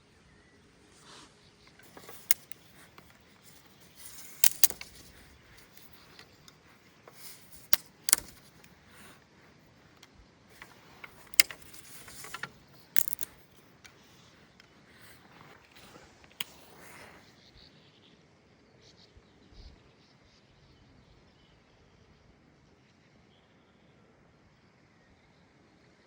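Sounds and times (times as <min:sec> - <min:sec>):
sharp clicks and snaps: 0:01.8 - 0:09.2, 0:10.6 - 0:17.0.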